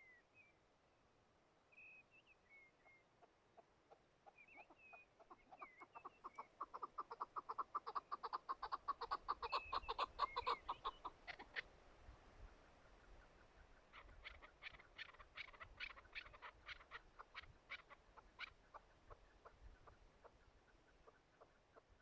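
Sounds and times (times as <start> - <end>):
partridge clucking call: 3.2 - 11.7, 13.9 - 22.0.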